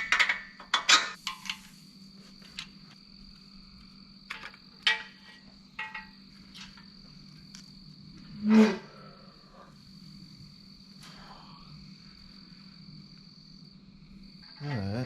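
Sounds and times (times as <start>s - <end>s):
metal tools clinking: 0.0s - 1.6s, 4.3s - 6.7s.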